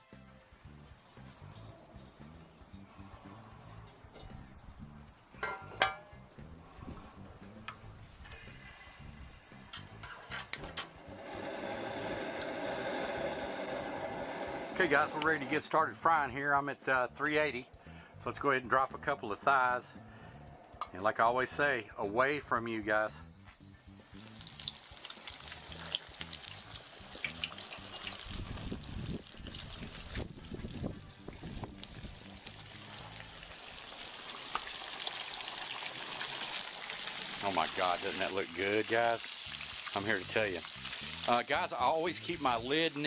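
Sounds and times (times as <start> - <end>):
propane burner hissing: 5.4 - 16.3, 23.9 - 43.0
chicken deep-frying in oil: 11.0 - 15.3, 24.0 - 43.0.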